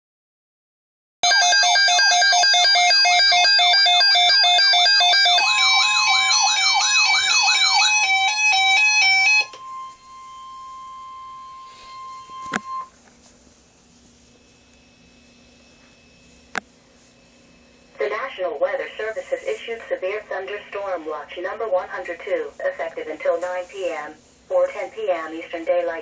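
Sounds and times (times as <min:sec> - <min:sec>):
electronic siren sweeps: 0:02.5 - 0:12.9
steady single-pitch beep: 0:09.4 - 0:12.9.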